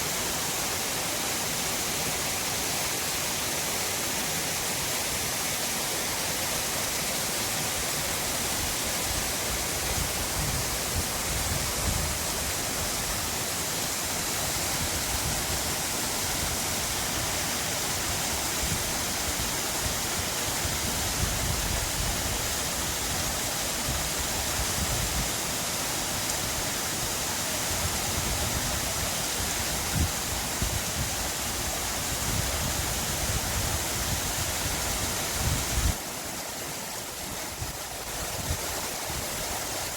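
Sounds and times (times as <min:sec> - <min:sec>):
stream rushing: 0:00.0 - 0:39.9
wind buffeting microphone: 0:09.1 - 0:13.2, 0:27.8 - 0:36.0.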